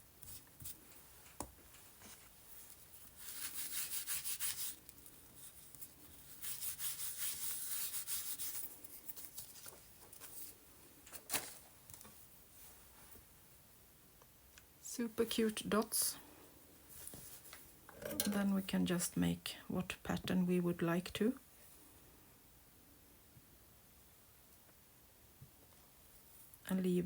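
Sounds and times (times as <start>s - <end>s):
rubbing strokes on paper: 2.0s - 10.5s.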